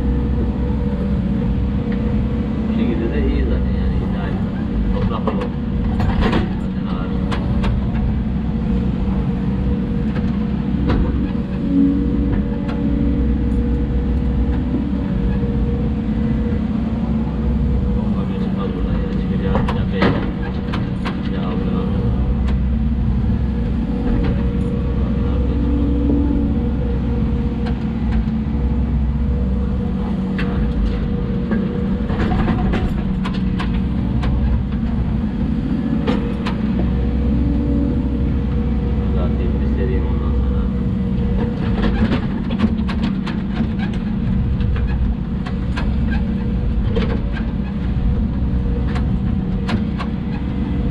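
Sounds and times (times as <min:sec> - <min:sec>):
excavator diesel engine running: 0:00.0 - 0:50.9
sharp knocks and clanks: 0:19.3 - 0:21.5.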